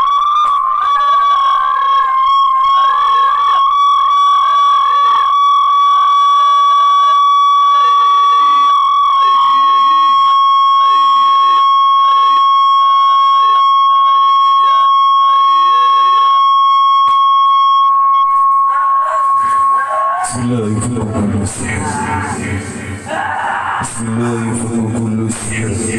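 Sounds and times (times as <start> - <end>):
wavering alarm-like wail: 0.0 - 24.6
high-pitched tone over loudspeaker: 0.0 - 25.9.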